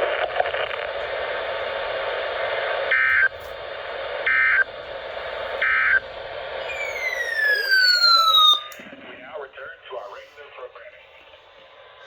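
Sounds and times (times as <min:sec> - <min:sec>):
warbling data bursts: 0:06.6 - 0:08.8.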